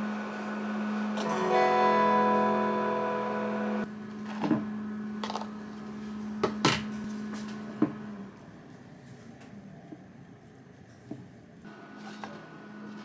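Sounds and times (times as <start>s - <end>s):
background music with guitar: 1.2s - 3.8s.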